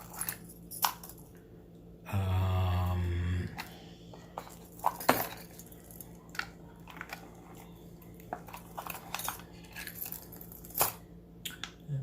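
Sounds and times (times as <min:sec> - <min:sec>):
metal jewelry clinking: 0:00.0 - 0:01.4, 0:04.2 - 0:11.1.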